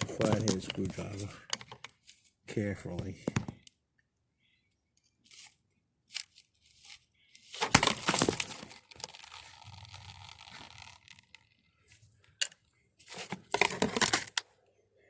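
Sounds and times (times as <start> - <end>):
hard plastic clicking and cracking: 0.0 - 2.0, 7.4 - 14.5
rustling and scraping: 0.0 - 2.4, 5.2 - 12.4, 13.0 - 14.4.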